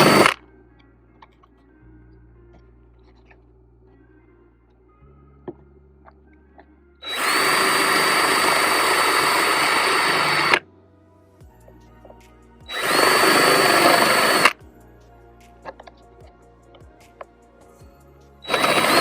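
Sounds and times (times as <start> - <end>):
power drill whining: 0.0 - 0.4, 7.0 - 10.6, 12.7 - 14.6, 18.4 - 19.0.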